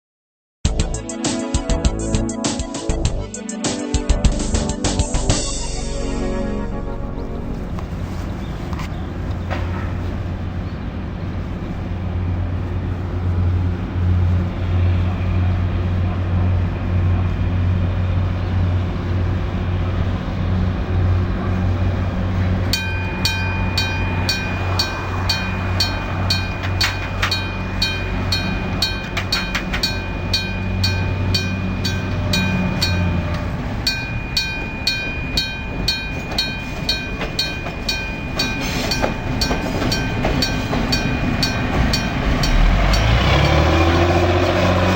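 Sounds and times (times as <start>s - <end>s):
locomotive humming: 1.0s - 44.9s
level crossing bell ringing: 22.7s - 44.3s.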